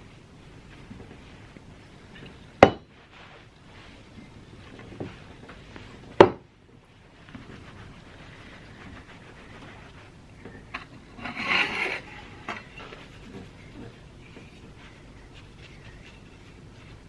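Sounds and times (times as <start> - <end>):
rubbing scrape on brass plate: 10.7 - 13.6.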